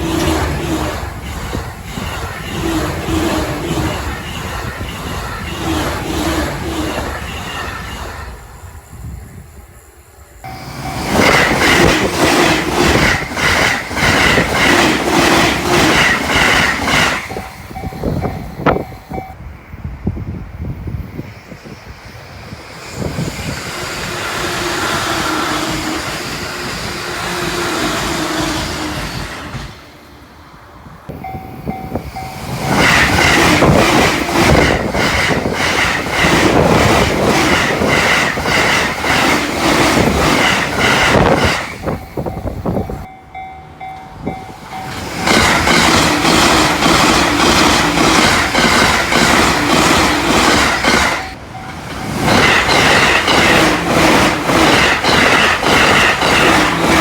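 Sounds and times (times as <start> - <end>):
train wheels clattering on rails: 0.0 - 8.6, 10.4 - 19.4, 31.1 - 57.0
level crossing bell ringing: 42.3 - 45.1.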